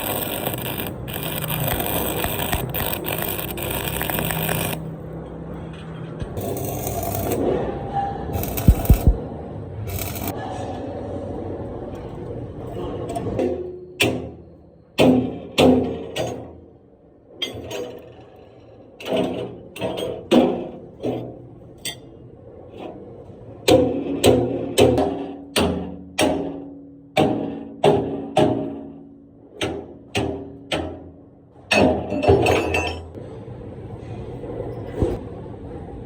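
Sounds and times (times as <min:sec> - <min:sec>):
steady noise: 0:08.4 - 0:09.3
hammer striking steel: 0:13.4 - 0:16.6, 0:23.7 - 0:33.0.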